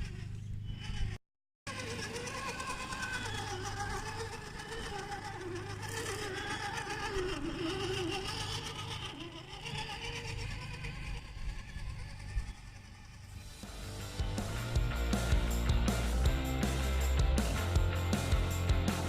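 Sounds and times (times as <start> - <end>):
toy car electric motor whining: 0.0 - 13.7.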